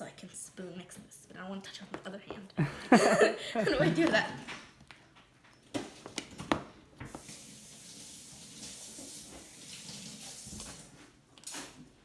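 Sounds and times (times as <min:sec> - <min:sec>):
tap running: 0:05.8 - 0:07.8.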